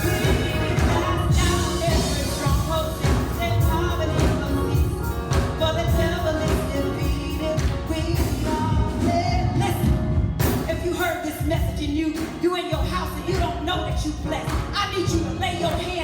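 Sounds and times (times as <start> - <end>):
steady drum beat: 0.0 - 12.0
live church music: 0.0 - 16.0.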